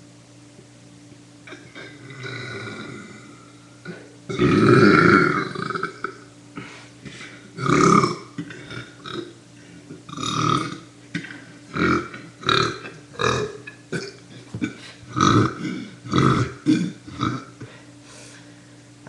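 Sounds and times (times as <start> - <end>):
man burping loudly: 1.4 - 6.7, 7.6 - 9.4, 10.0 - 17.7.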